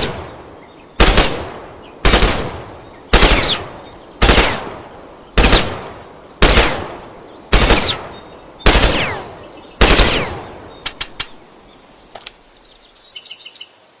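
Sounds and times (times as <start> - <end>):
assault rifle firing bursts: 1.0 - 3.6, 4.2 - 4.7, 5.4 - 6.9, 7.5 - 8.0, 8.7 - 9.2, 9.8 - 10.4.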